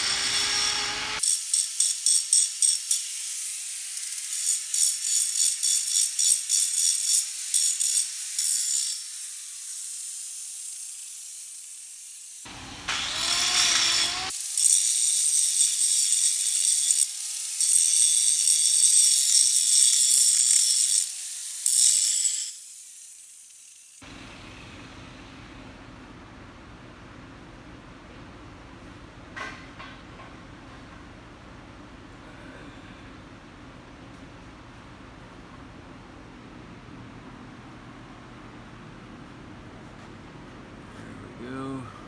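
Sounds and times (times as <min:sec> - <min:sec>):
grinder grinding steel: 0:00.0 - 0:24.1.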